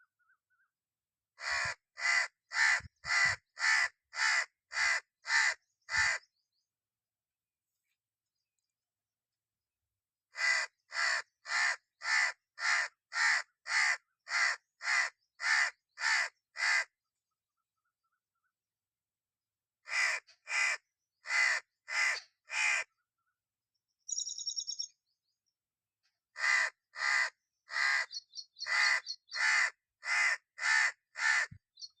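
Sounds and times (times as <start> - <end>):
high trilling bird call: 24.1 - 25.0, 27.8 - 29.7
ibis harsh calls: 26.4 - 31.5.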